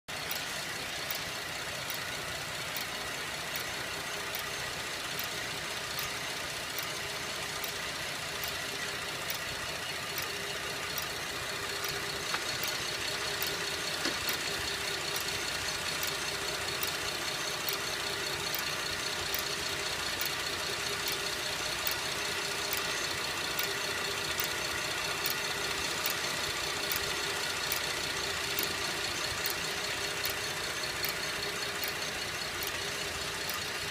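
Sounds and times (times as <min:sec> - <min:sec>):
car engine idling: 0:00.1 - 0:33.9
slow metallic ticking: 0:00.1 - 0:33.9.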